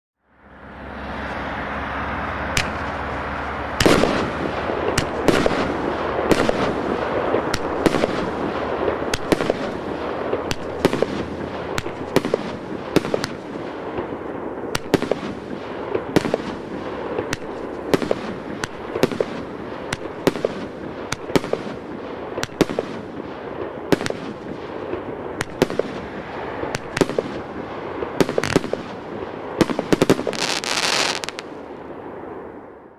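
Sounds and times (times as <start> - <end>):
firework reports: 2.5 - 32.7
firework hiss and crackle: 2.6 - 31.8.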